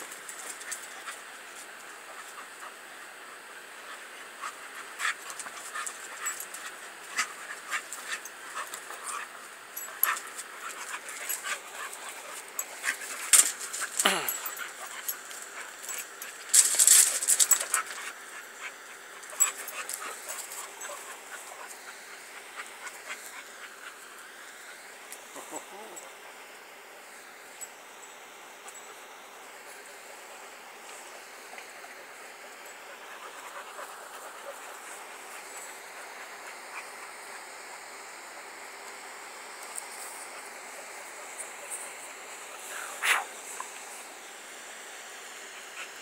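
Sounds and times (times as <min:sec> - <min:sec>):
dogs panting: 0:00.1 - 0:46.0
clicks and rustles: 0:04.4 - 0:21.8
dogs scuffling: 0:04.4 - 0:22.0
dog whining: 0:25.3 - 0:26.1.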